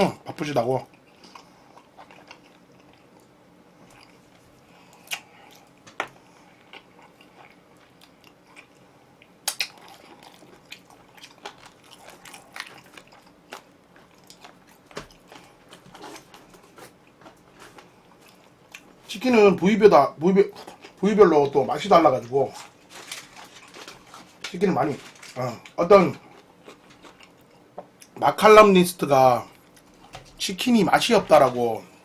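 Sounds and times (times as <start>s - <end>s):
biting and chewing chicken: 1.0s - 19.0s, 22.1s - 27.8s.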